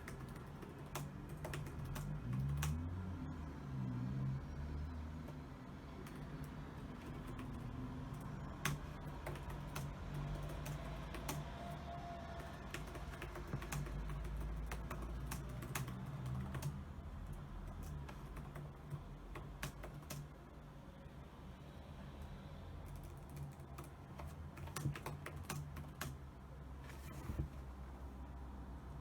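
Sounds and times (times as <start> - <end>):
keyboard key clicks: 8.3 - 11.7, 12.4 - 16.8, 22.9 - 26.2.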